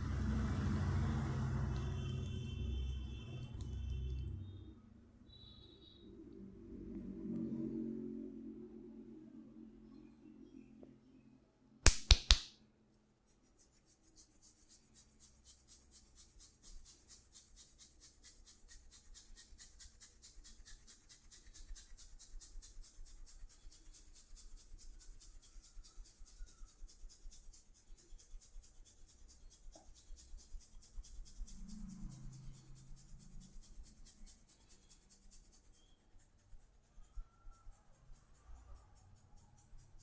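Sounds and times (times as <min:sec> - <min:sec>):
sharp loud cracks: 0:11.8 - 0:12.5.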